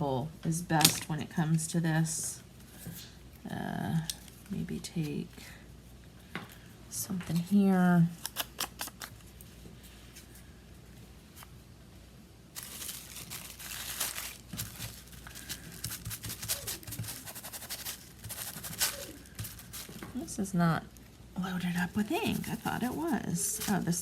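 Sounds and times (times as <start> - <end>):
paper rustling and crinkling: 12.6 - 20.3, 21.8 - 24.0.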